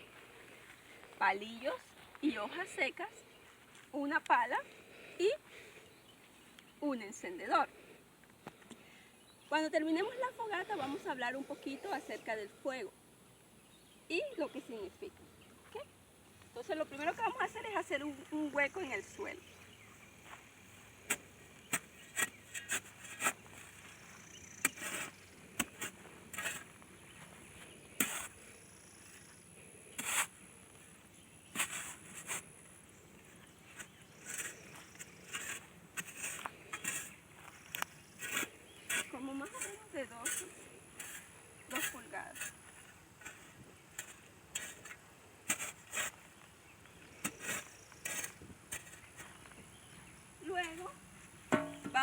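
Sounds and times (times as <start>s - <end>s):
shovel scraping: 20.2s - 46.4s, 47.2s - 49.4s, 50.5s - 52.0s
shovel stabbing into soil: 21.0s - 27.3s, 28.0s - 28.4s, 30.0s - 30.4s, 31.5s - 32.5s, 33.7s - 46.4s, 47.2s - 49.4s.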